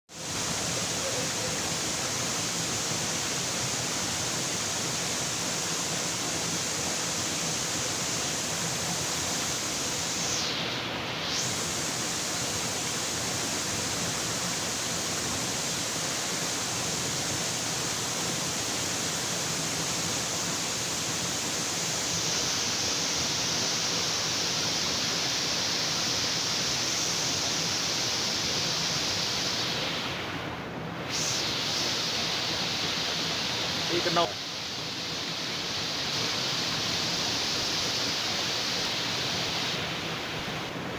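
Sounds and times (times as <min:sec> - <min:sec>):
waterfall rushing: 0:31.1 - 0:40.9.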